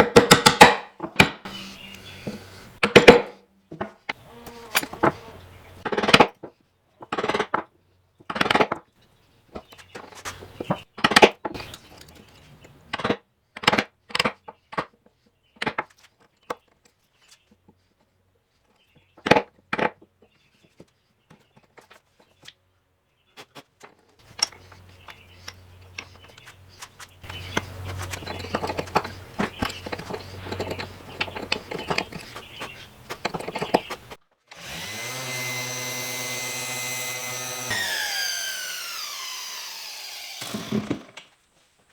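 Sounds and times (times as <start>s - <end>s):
hand tools knocking on wood: 0.0s - 1.6s, 2.2s - 3.9s, 24.3s - 34.2s
scraping on wood: 1.4s - 6.3s, 23.4s - 41.1s.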